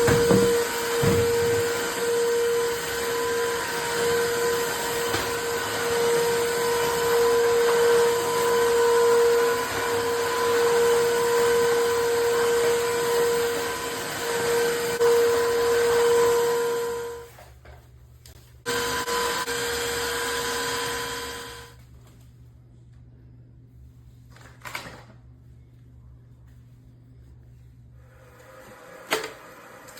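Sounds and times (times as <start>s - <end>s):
floor cleaner whining: 0.0s - 17.4s, 18.7s - 21.8s, 28.0s - 29.9s.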